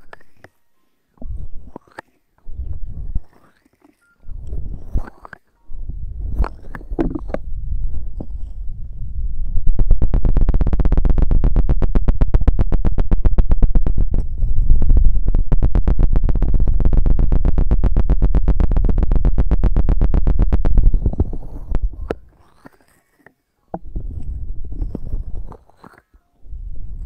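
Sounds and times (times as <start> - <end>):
feather scratching on microphone: 23.9 - 26.1.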